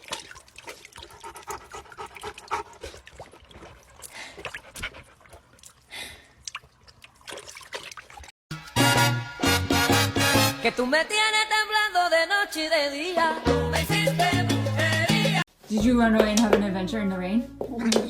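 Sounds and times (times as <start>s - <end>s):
dog lapping water: 0.0s - 8.3s.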